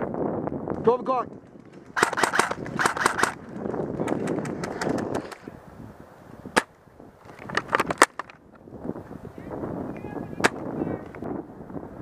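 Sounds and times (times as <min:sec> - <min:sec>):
airsoft guns firing: 0:01.9 - 0:03.4.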